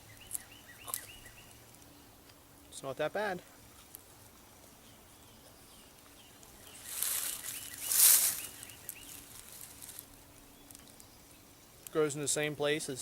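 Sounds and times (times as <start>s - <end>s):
faint bird chirps: 0.0s - 2.1s, 4.8s - 9.5s
close rustling: 6.4s - 11.0s.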